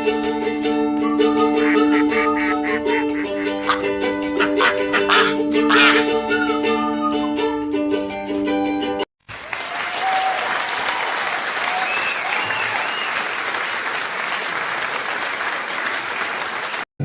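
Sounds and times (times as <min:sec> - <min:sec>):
plucked string music: 0:00.0 - 0:09.0
crowd applause: 0:01.0 - 0:06.1, 0:09.2 - 0:16.9.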